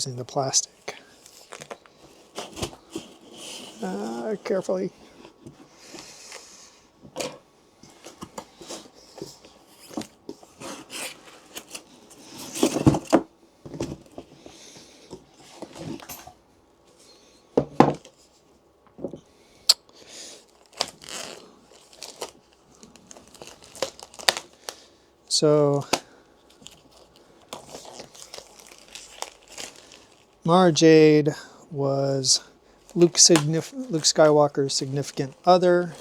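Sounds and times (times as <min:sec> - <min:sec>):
plastic packaging rustling: 0:00.4 - 0:13.2, 0:20.3 - 0:25.0, 0:25.8 - 0:30.5, 0:32.7 - 0:36.0.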